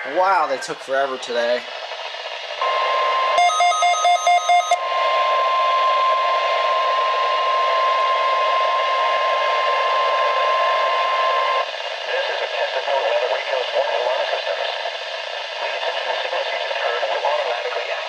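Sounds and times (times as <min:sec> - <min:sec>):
radio hiss: 0:00.0 - 0:03.4, 0:04.8 - 0:18.0
steady high alert tone: 0:03.4 - 0:04.8.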